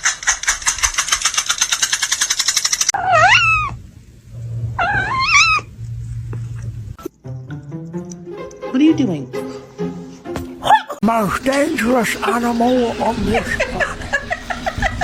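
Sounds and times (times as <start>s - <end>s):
fast ticking: 0.0s - 3.0s
cat meowing: 3.0s - 3.8s, 4.8s - 5.7s
low steady hum: 3.0s - 7.2s.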